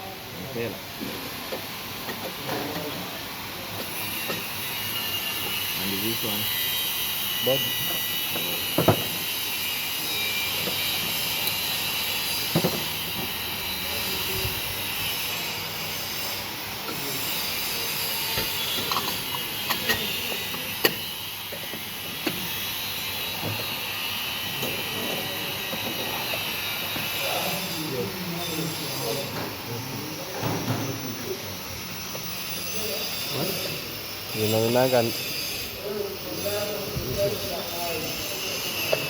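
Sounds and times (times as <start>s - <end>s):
metal tools clicking and knocking: 18.4s - 22.4s.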